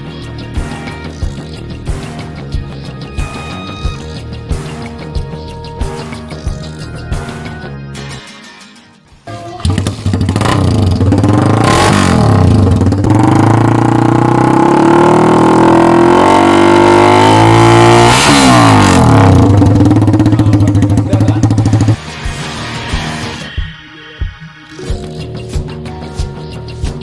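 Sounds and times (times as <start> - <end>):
motorcycle engine revving: 9.3 - 22.0.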